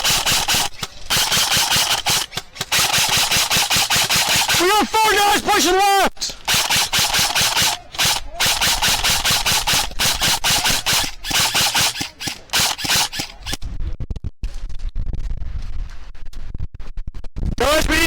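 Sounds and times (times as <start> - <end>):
airsoft gun shots: 0.0 - 4.9, 6.4 - 13.6.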